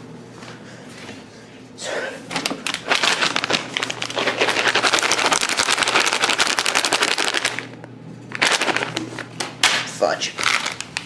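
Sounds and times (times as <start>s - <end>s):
dry cat food rattling: 2.9s - 7.7s, 10.4s - 11.0s.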